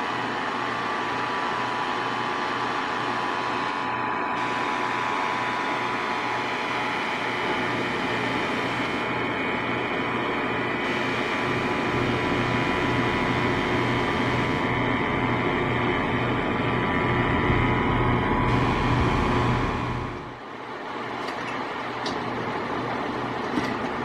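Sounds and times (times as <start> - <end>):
vehicle engine running: 10.8 - 20.4.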